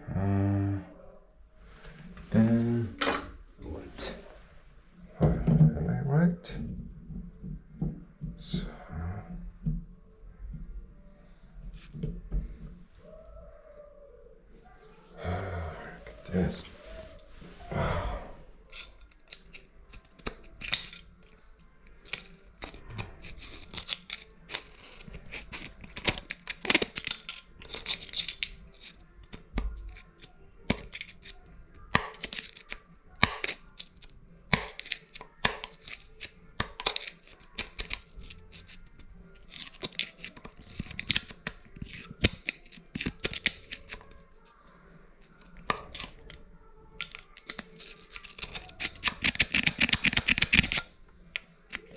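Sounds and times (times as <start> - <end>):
hand tools clicking and tapping metal: 18.7 - 44.2, 45.2 - 46.4, 47.0 - 51.9.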